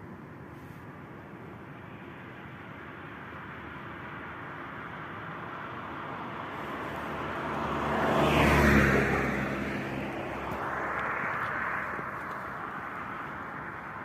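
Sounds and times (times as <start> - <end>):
motor vehicle passing by: 5.5 - 14.0.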